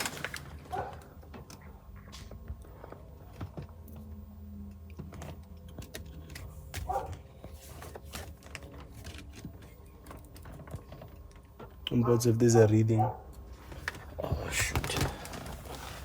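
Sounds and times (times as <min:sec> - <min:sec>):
low hum: 0:00.0 - 0:12.4.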